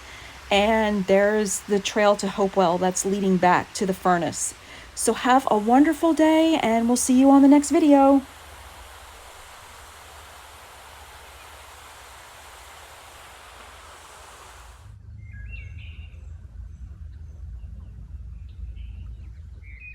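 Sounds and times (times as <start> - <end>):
steady rushing hiss: 0.0 - 15.0
low rumble: 14.6 - 19.9.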